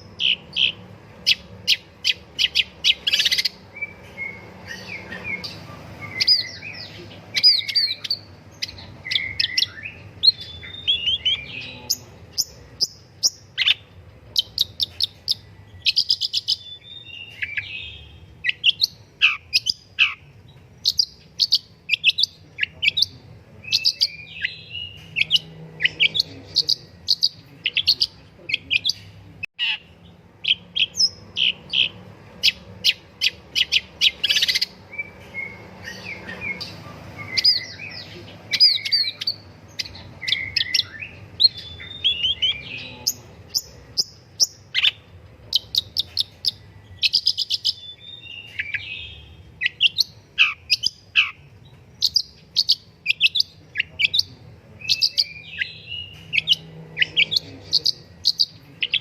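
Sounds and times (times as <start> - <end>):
bird singing varied song: 0.0 - 59.0.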